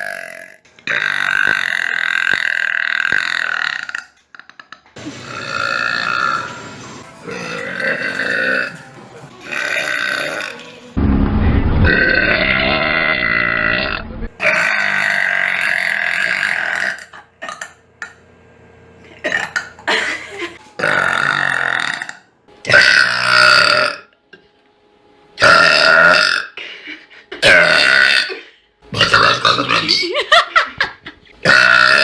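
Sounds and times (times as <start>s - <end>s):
woman burping loudly: 0.0s - 4.1s, 5.0s - 6.5s, 7.2s - 8.7s, 9.4s - 10.5s, 11.9s - 17.7s, 19.2s - 19.9s, 20.8s - 24.1s, 25.4s - 26.6s, 27.4s - 30.1s, 31.4s - 32.0s.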